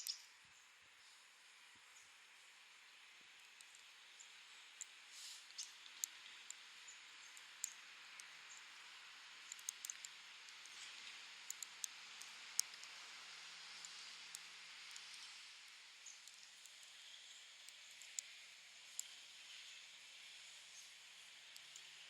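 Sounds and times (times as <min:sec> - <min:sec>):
faint steady hiss: 0:00.0 - 0:22.0
metal knitting needles clicking: 0:09.5 - 0:10.8.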